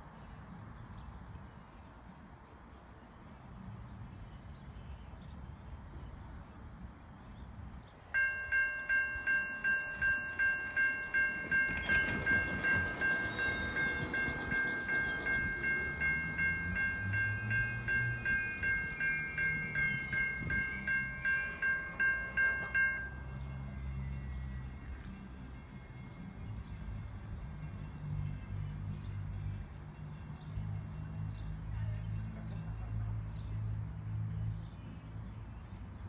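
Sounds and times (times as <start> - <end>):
railroad crossing bell ringing: 8.1 - 25.0
train wheels rushing on rails: 8.2 - 28.4.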